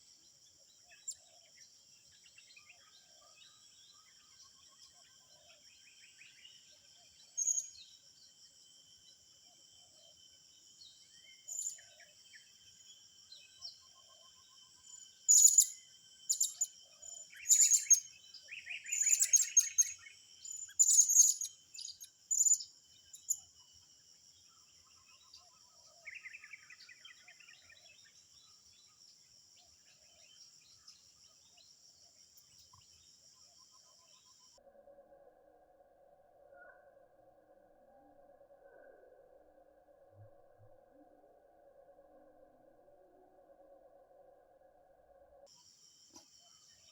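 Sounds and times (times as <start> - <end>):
insects buzzing: 7.4 - 34.5
sharp high-pitched bird calls: 15.3 - 16.7, 17.4 - 18.1, 18.9 - 22.6.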